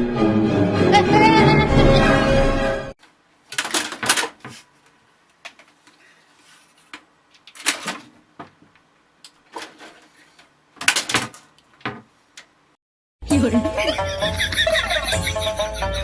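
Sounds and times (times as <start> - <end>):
music: 0.0 - 2.9, 13.2 - 16.0
rustling and clattering: 3.5 - 12.5.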